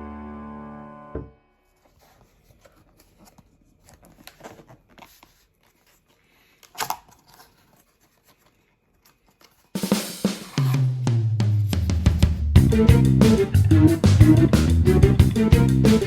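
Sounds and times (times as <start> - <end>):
music: 0.0 - 1.4, 9.8 - 16.0
scrape: 1.6 - 6.5.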